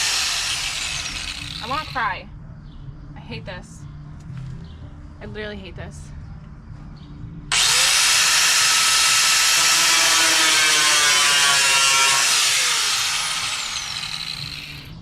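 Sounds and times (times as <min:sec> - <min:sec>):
cut-off wheel whining: 0:00.0 - 0:02.0, 0:07.5 - 0:15.0
wheel cutting sheet steel: 0:00.0 - 0:02.0, 0:07.5 - 0:14.9.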